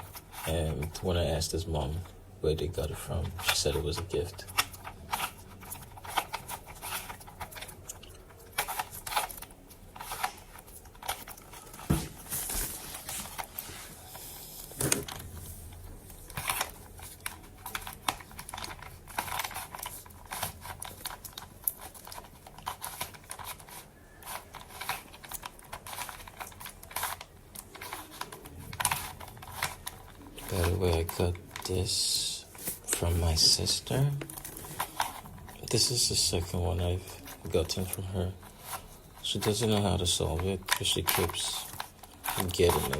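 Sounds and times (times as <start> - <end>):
puzzle cube plastic clicks: 14.7 - 42.9.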